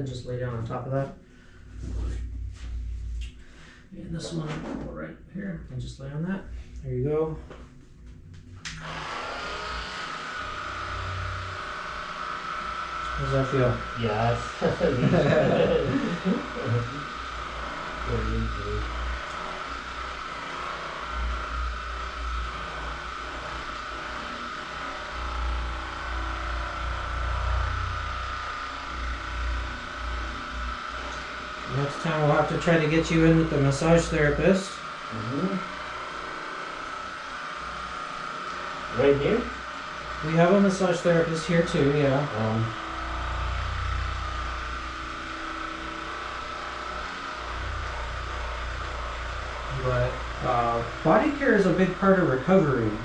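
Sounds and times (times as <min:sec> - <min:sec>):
small motor running: 0:08.4 - 0:53.0.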